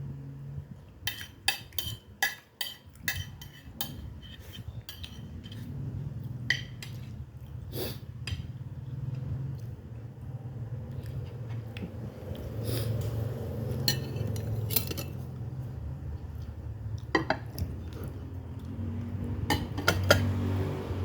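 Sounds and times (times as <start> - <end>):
low steady hum: 0.0 - 21.0
cutlery clinking on plates: 1.1 - 5.5, 13.7 - 15.2.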